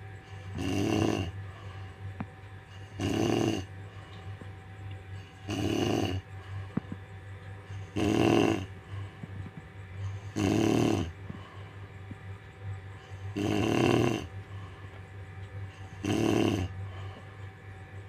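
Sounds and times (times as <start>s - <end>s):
woman snoring: 0.4s - 1.4s, 2.8s - 3.7s, 5.3s - 6.2s, 7.8s - 8.7s, 10.1s - 11.2s, 13.3s - 14.4s, 15.8s - 16.7s.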